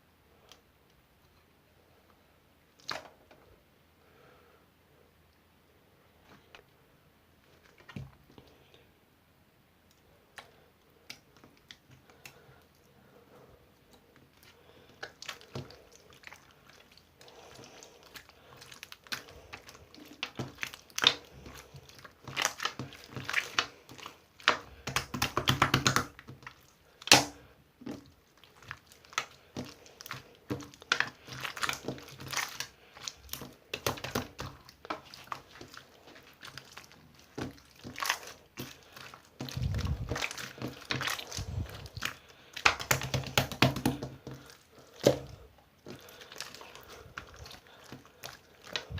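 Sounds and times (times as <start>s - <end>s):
hands squishing slime: 2.8s - 3.2s, 13.7s - 48.9s
small wet clicks and pops: 2.8s - 3.2s, 9.8s - 12.8s, 13.8s - 48.9s.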